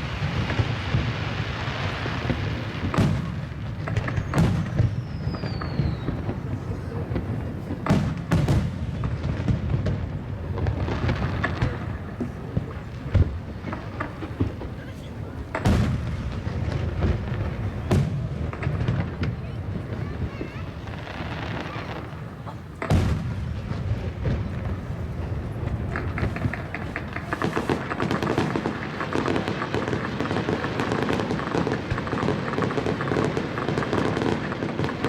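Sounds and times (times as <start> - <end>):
crowd chatter: 0.0 - 35.0
fireworks bangs: 0.0 - 35.0
falling firework whistle: 4.0 - 6.6.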